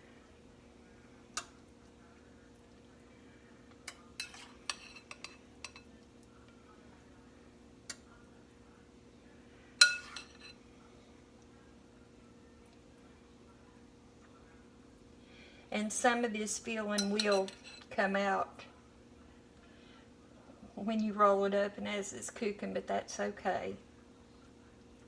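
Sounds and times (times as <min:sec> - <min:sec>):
spoon clinking against bowl: 0:09.8 - 0:10.5, 0:17.0 - 0:17.9.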